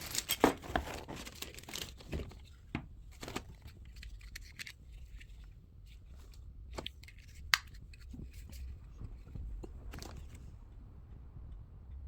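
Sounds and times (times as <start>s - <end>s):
rustling and crinkling: 0.0s - 10.8s.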